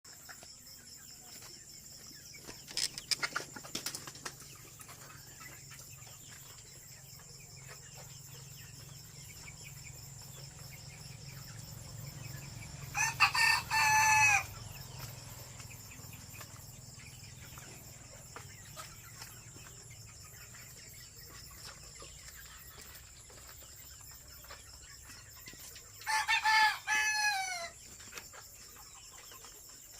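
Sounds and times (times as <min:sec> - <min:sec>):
chickens clucking: 0:00.1 - 0:29.9
rooster crowing: 0:12.9 - 0:14.6, 0:26.0 - 0:27.8.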